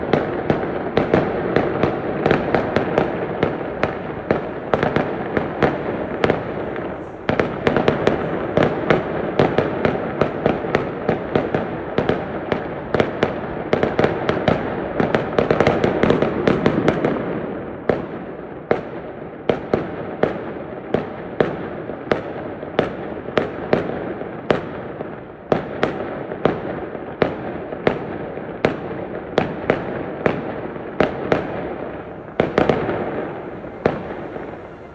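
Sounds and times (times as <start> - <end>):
distant fireworks rumble: 0.0 - 34.9
fireworks sharp bangs: 0.0 - 34.9.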